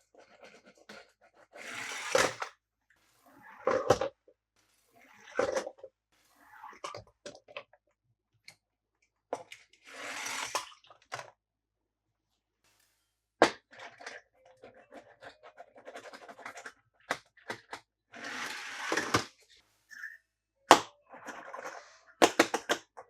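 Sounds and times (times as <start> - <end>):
plastic toys clicking and tapping: 13.4 - 17.9, 20.7 - 23.0.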